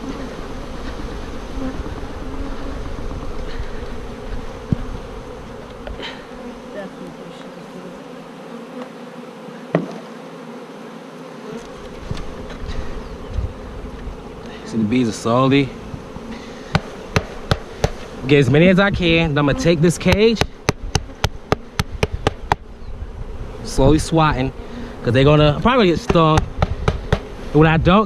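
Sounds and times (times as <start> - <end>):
honeybees buzzing: 0.0 - 28.0
sharp knocks: 9.7 - 10.0, 26.0 - 27.3.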